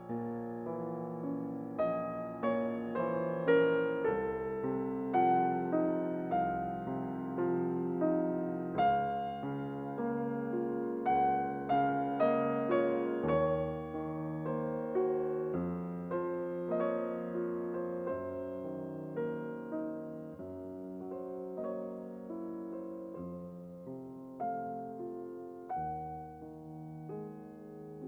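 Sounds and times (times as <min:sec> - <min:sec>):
slow gentle piano melody: 0:00.0 - 0:28.0.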